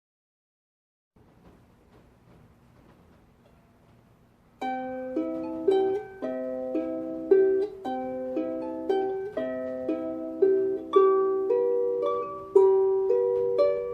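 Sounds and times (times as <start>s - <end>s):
faint hiss: 1.2s - 13.9s
plucked string instrument: 4.6s - 13.9s.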